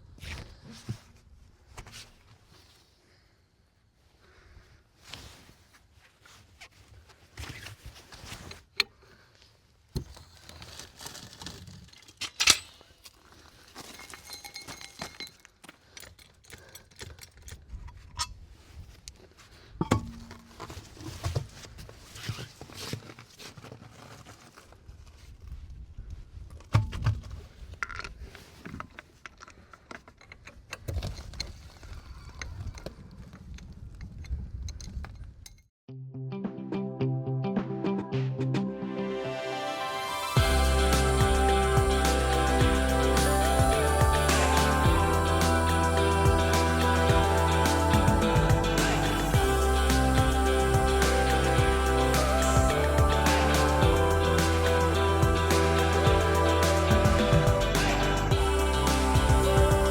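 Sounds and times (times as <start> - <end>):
metal tools clinking: 12.1 - 13.1, 13.8 - 17.6.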